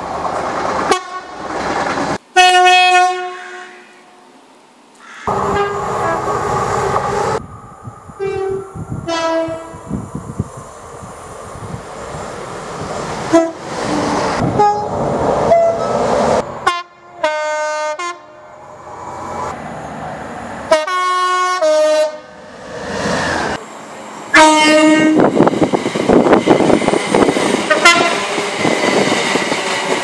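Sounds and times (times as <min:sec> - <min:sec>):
passing trains rumbling: 0:00.0 - 0:03.3, 0:05.2 - 0:30.0
train air horn blasts: 0:00.9 - 0:01.3, 0:02.3 - 0:04.2, 0:05.3 - 0:06.4, 0:08.2 - 0:09.9, 0:13.3 - 0:13.6, 0:14.4 - 0:14.9, 0:16.6 - 0:18.5, 0:20.7 - 0:22.3, 0:24.3 - 0:25.3, 0:27.7 - 0:28.7.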